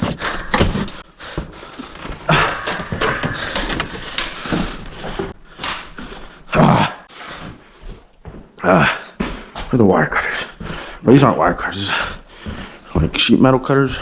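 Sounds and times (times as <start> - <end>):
knocks and scrapes: 0.0 - 6.2.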